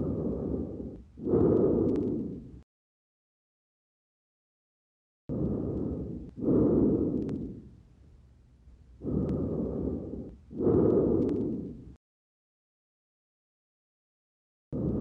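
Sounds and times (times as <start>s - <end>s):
breathing through a stethoscope: 0.0s - 2.6s, 5.3s - 7.8s, 9.0s - 12.0s, 14.8s - 15.0s.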